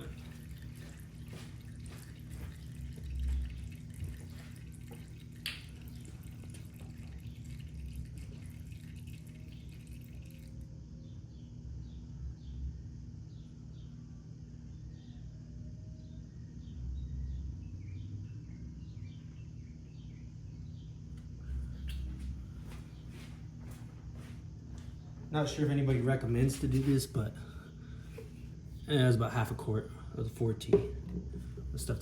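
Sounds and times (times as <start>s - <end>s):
oil dripping into a pan: 0.0s - 10.6s
insects chirping: 0.0s - 32.0s.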